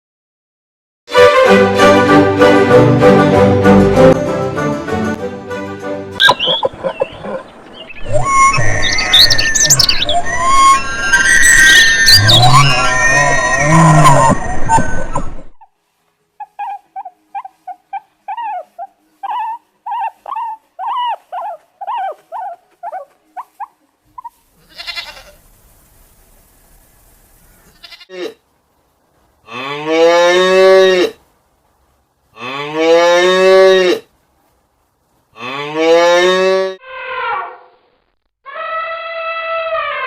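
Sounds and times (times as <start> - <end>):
high squeaky animal calls: 6.2 - 15.8, 16.4 - 25.4, 38.5 - 40.0
cow mooing: 35.4 - 37.5.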